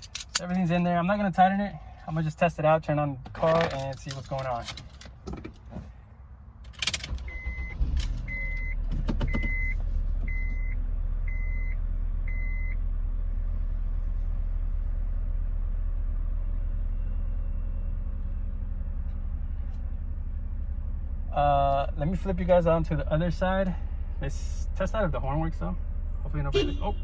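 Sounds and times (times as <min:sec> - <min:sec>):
car engine starting and idling: 0:00.0 - 0:27.0.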